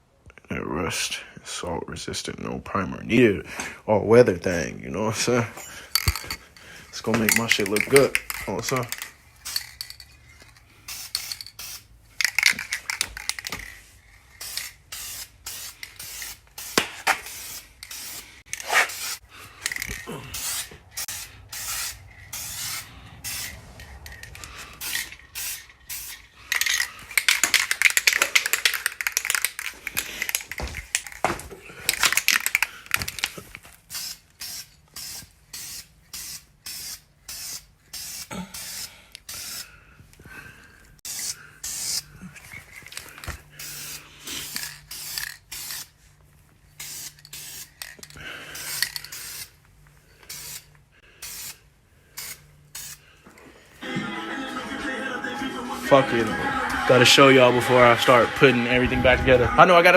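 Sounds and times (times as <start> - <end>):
spray can hissing: 10.9 - 29.2, 33.9 - 39.6, 41.0 - 42.0, 43.6 - 45.9, 46.8 - 47.9, 48.6 - 49.6, 50.3 - 51.6, 52.2 - 53.0.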